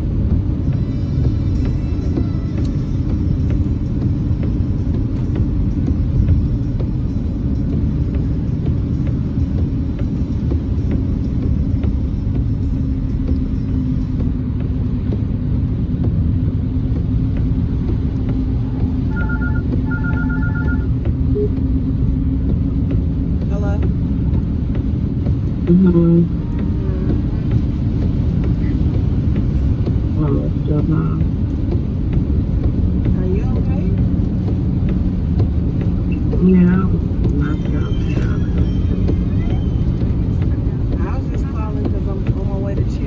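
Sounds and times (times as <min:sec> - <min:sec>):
car driving rumble: 0:00.0 - 0:43.0
electronic beeping: 0:19.1 - 0:21.6.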